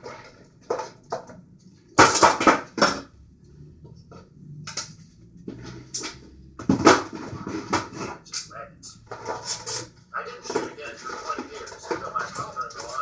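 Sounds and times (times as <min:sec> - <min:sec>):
hard objects clattering on surface: 0:02.0 - 0:03.1, 0:04.7 - 0:13.0
faint low hum: 0:02.7 - 0:13.0.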